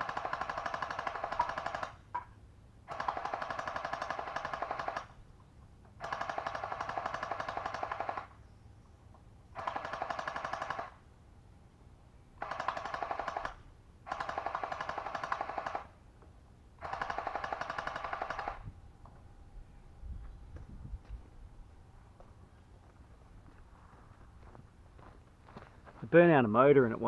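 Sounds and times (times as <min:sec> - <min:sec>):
rapid clicking shots: 0:00.0 - 0:02.0, 0:02.9 - 0:05.1, 0:06.0 - 0:08.3, 0:09.6 - 0:11.0, 0:12.4 - 0:15.9, 0:16.8 - 0:18.6.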